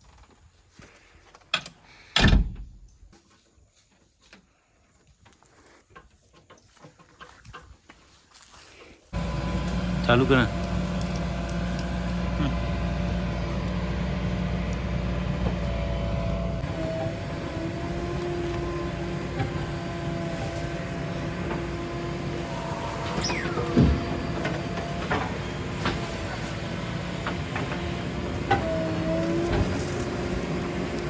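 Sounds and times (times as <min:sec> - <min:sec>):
diesel engine of heavy machinery: 0:09.2 - 0:31.0
whining tones: 0:09.2 - 0:31.0.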